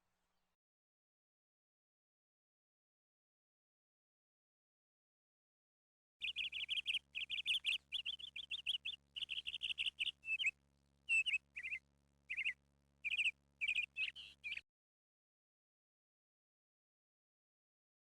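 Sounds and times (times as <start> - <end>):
faint hum: 6.2 - 14.6
small bird chirping: 6.2 - 14.6.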